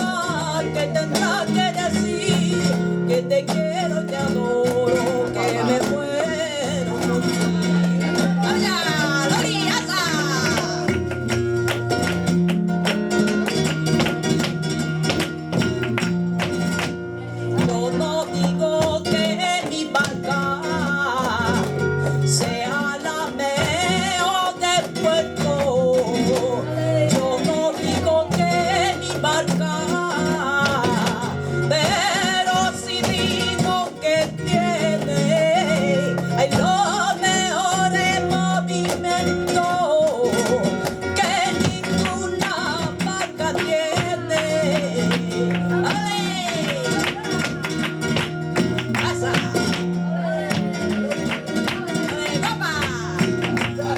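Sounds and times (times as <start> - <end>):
flamenco guitar strumming: 0.0 - 53.9.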